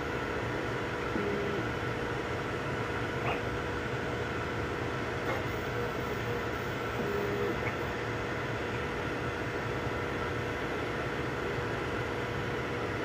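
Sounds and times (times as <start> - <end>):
printer fans and motors whirring: 0.0 - 13.0
faint steady tones: 5.3 - 12.8.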